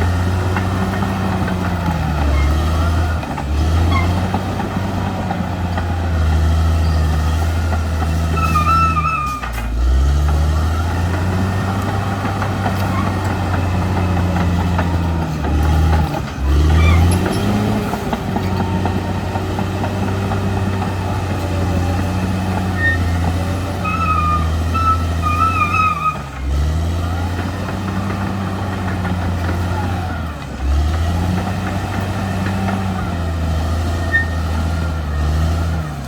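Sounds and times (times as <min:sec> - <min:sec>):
bulldozer diesel engine running: 0:00.0 - 0:36.0
high squeals: 0:01.8 - 0:04.4, 0:08.1 - 0:09.7, 0:16.6 - 0:17.8, 0:22.5 - 0:26.4, 0:33.9 - 0:35.2.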